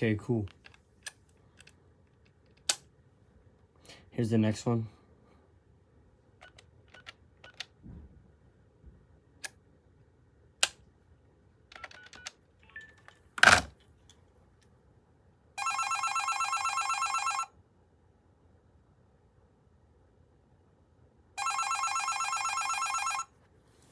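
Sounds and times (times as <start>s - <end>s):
telephone electronic ringer warble: 15.6s - 17.5s, 21.4s - 23.3s.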